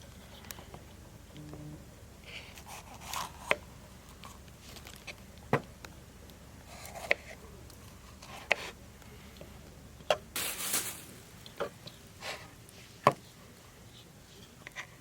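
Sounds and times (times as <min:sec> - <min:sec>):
rustling scrape: 0:10.4 - 0:11.3.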